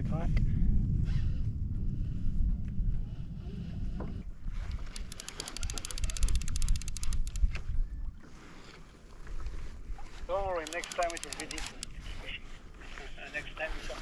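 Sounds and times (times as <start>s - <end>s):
wind rumble on microphone: 0.0s - 10.6s
fishing reel drag clicking: 4.5s - 7.8s, 8.4s - 13.0s.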